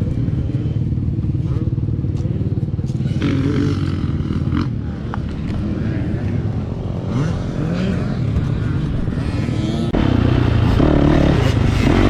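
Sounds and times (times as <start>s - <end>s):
motocross engine revving: 3.0s - 12.0s.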